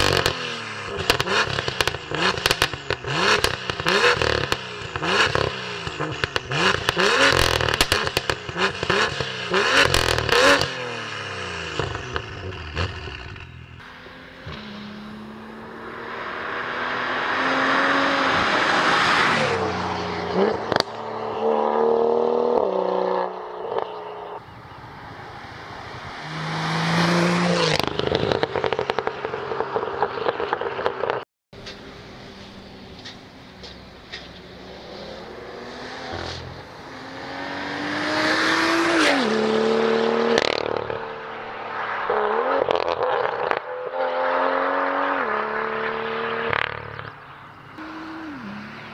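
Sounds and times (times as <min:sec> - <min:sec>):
exhaust crackles and pops: 0:00.0 - 0:10.7, 0:27.7 - 0:34.4, 0:40.4 - 0:41.0
car engine revving: 0:00.0 - 0:31.2, 0:32.6 - 0:48.9.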